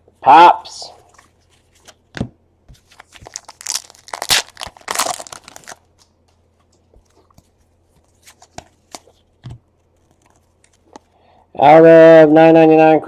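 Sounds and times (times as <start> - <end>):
plastic wrapper tearing and crinkling: 2.8 - 6.1.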